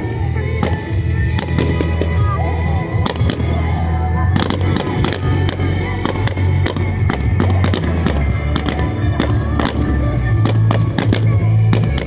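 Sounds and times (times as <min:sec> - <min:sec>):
loud bass-heavy music: 0:00.0 - 0:12.0
fireworks bangs and cracks: 0:04.4 - 0:12.0.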